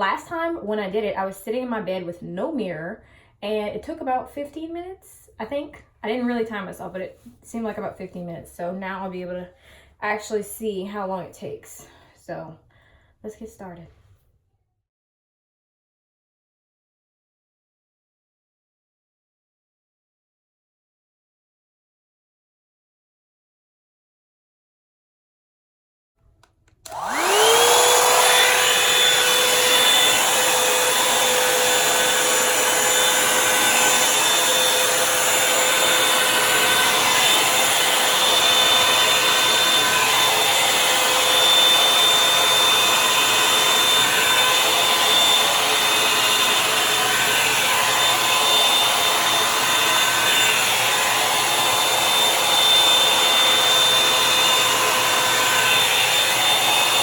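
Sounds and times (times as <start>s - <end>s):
hot-air brush motor whine: 26.9s - 57.0s.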